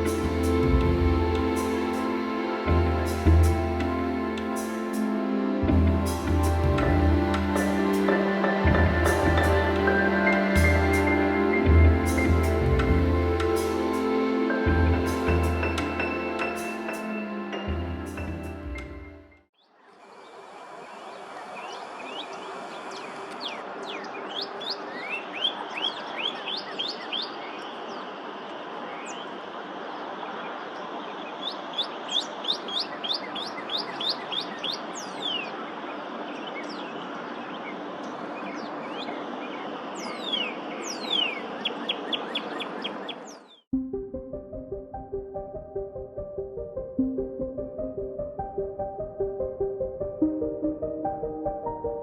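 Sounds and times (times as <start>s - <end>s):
songbirds chirping: 0.0s - 43.7s.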